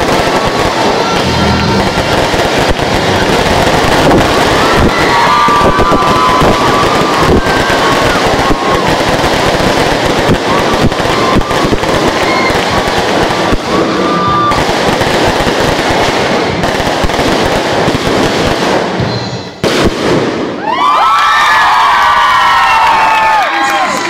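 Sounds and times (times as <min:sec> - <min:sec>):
fireworks crackling and popping: 0:00.0 - 0:24.0
sharp firework bang: 0:15.8 - 0:20.6.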